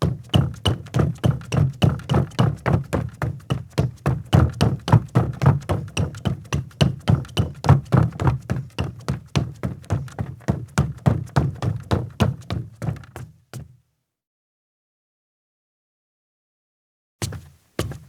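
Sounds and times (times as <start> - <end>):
footsteps in sneakers on a deck: 0.5 - 13.8, 17.2 - 18.0.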